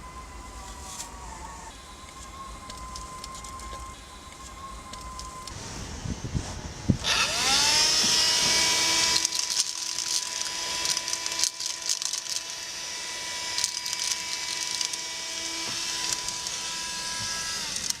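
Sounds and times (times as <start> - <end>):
handheld vacuum cleaner whine: 0.0 - 18.0
crackling rattles in vacuum: 6.9 - 18.0.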